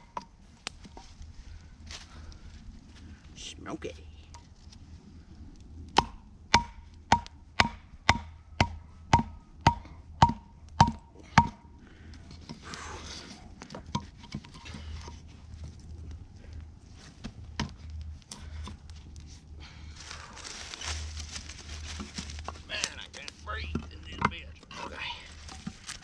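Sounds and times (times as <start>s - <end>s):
sharp chopping strikes: 6.0s - 11.6s
soft rustling: 13.2s - 23.6s, 24.3s - 26.0s.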